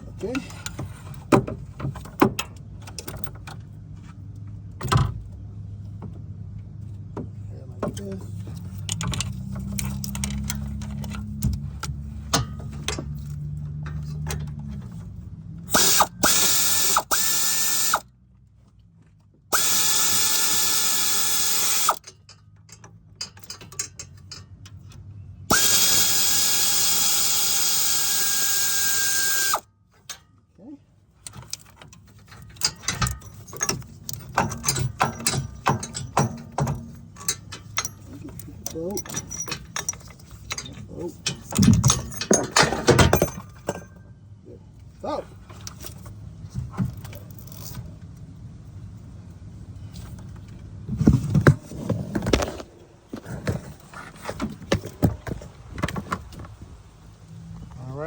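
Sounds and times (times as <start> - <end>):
cordless power tool whining: 15.7 - 18.0, 19.5 - 22.0, 25.5 - 29.7.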